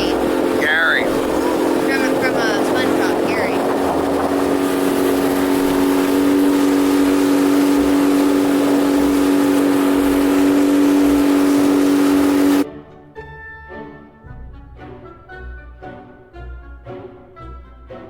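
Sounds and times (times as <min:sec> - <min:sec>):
boat engine running: 0:00.0 - 0:12.6
water rushing: 0:00.0 - 0:12.6
wind rushing: 0:00.0 - 0:12.6.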